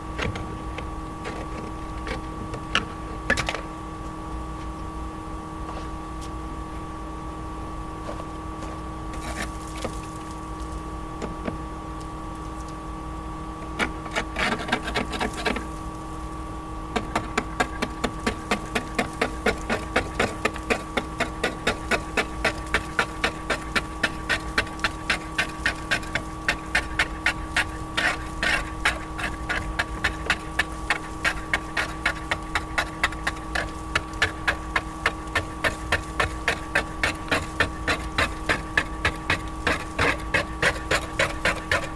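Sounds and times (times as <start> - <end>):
steady hum: 0.0 - 41.9
scraper scraping stucco: 8.7 - 10.8, 13.7 - 16.3, 17.0 - 41.9.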